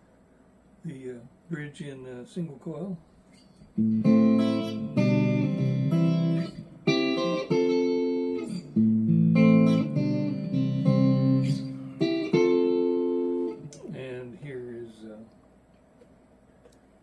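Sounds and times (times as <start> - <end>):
clean electric guitar chords: 3.7 - 14.0.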